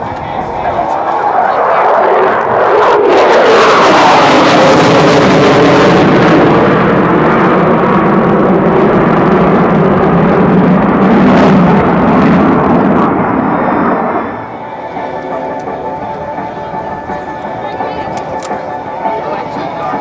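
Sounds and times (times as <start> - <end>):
deep jet rumble: 0.0 - 20.0
jet engines roaring past: 0.0 - 20.0.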